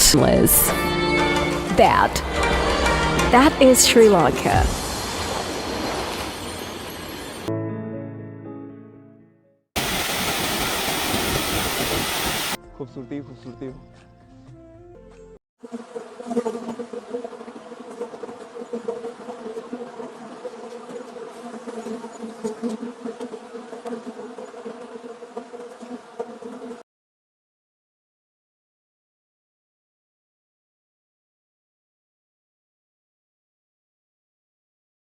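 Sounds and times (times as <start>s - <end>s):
loud rushing noise: 9.8s - 12.6s
insects buzzing: 15.6s - 26.8s.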